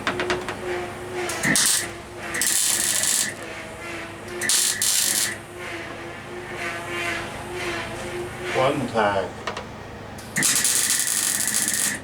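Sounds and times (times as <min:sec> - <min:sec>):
generator droning: 0:00.0 - 0:12.0
welding arc crackle: 0:01.4 - 0:03.4, 0:04.4 - 0:05.4, 0:10.4 - 0:12.0.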